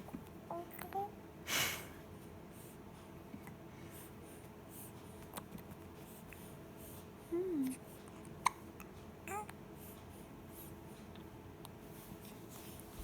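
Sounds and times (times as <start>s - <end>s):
faint room noise: 0.0s - 13.0s.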